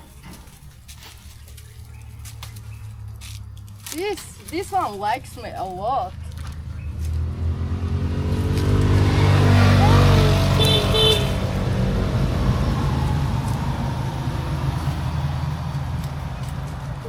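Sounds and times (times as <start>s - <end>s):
vehicle driving past: 4.9s - 17.0s
short high horn toot: 10.5s - 11.4s.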